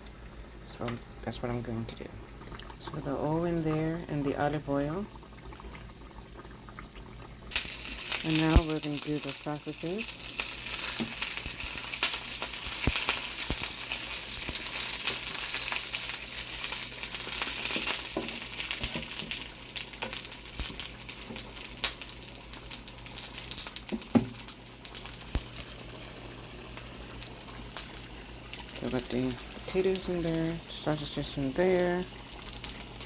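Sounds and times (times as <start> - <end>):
food sizzling in oil: 7.4 - 33.0.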